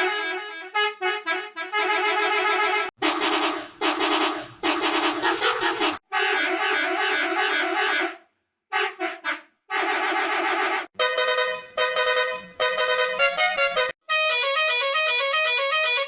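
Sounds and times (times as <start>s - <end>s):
brassy bus horn: 0.0s - 2.9s, 6.1s - 16.0s
musical horn melody: 11.0s - 16.0s.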